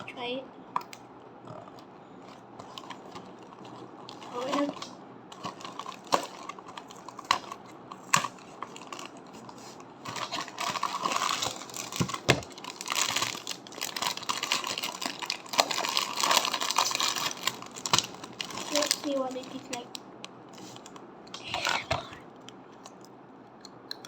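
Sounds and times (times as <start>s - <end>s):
wrapper crinkling and rustling: 2.2s - 19.9s.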